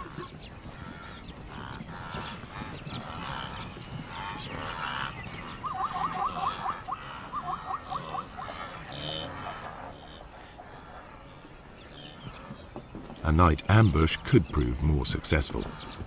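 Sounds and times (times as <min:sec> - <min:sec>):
outdoor background noise: 0:00.0 - 0:16.0
animal yelping calls: 0:03.2 - 0:10.8.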